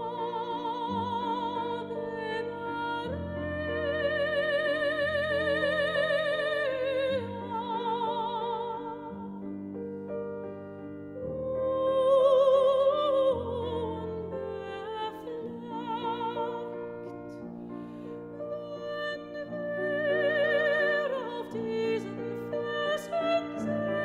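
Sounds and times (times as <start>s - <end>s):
slow opera-like classical music: 0.0s - 24.0s.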